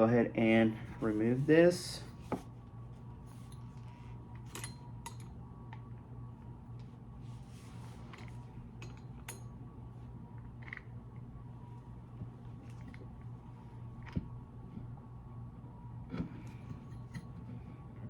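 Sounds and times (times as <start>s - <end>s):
steady low hum: 0.0s - 18.0s.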